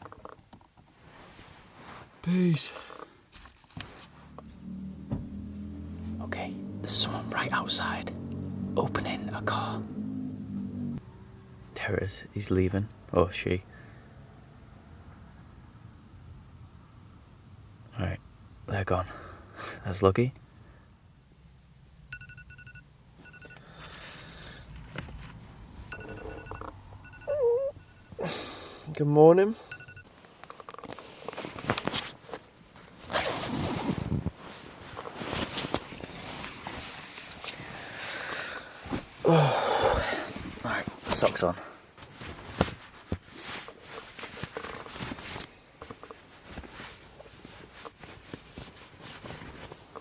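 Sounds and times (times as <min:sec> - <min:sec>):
phone alarm beeping: 0:22.1 - 0:23.8, 0:25.9 - 0:28.2, 0:29.6 - 0:30.1
rustle of movement: 0:23.8 - 0:26.8, 0:30.0 - 0:39.2, 0:40.0 - 0:50.0
groan-like vocal sound: 0:39.2 - 0:40.3.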